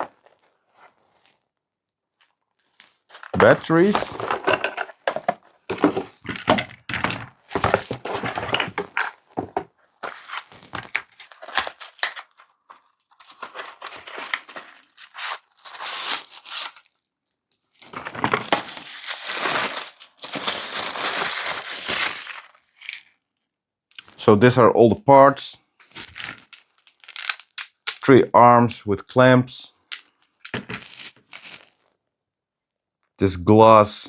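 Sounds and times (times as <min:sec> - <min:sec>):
plastic packaging crinkling: 0:02.7 - 0:06.4, 0:07.5 - 0:17.1, 0:17.7 - 0:23.1, 0:25.8 - 0:28.0, 0:30.4 - 0:31.9.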